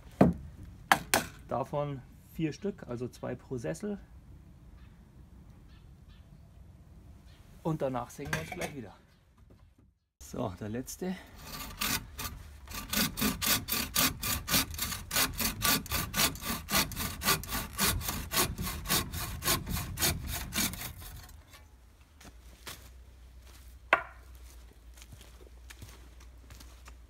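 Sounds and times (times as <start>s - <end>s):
hand saw cutting wood: 11.3s - 21.7s.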